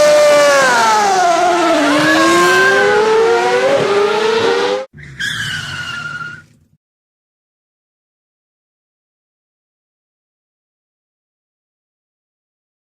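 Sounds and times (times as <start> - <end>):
race car engine whine: 0.0 - 6.6
tyres squealing: 4.9 - 6.6.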